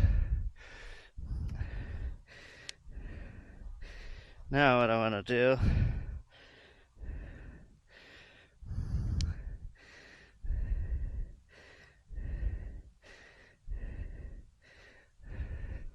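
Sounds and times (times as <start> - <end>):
heavy breathing into microphone: 0.0 - 4.6, 5.5 - 15.9.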